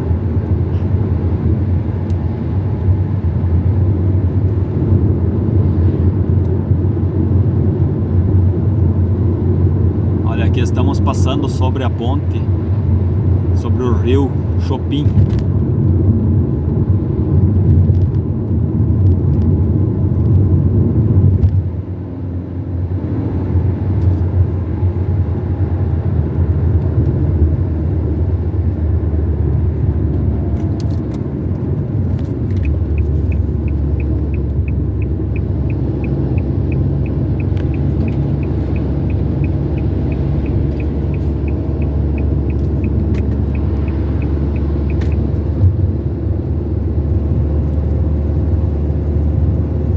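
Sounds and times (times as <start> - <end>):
car engine and tyre rumble: 0.0 - 49.9
steady ticking: 32.5 - 45.2.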